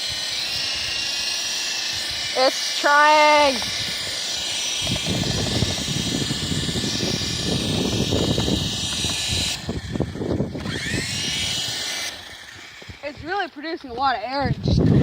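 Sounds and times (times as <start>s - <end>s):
electric motor whining: 0.0s - 15.0s
rotor blades rushing air: 0.0s - 15.0s.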